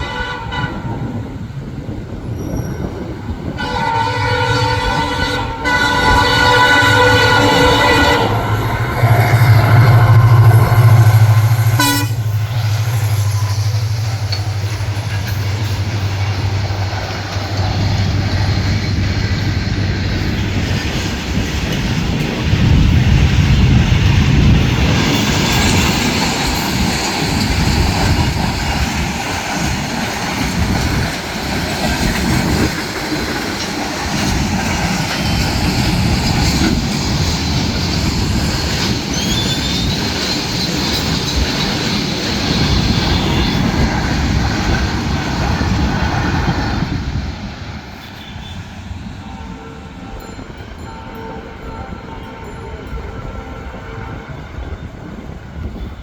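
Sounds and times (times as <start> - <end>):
train wagons rattling on rails: 0.0 - 56.0
high wheel squeals: 2.3 - 3.8, 6.1 - 16.9, 35.2 - 44.4.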